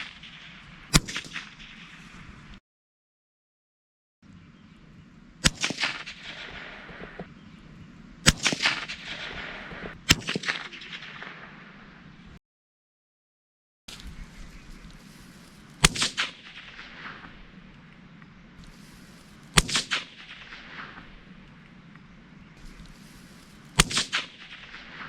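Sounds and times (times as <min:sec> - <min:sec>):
gunshots with echoes: 0:05.4 - 0:07.3, 0:08.2 - 0:12.0, 0:15.8 - 0:17.8, 0:19.5 - 0:21.5, 0:23.8 - 0:25.0.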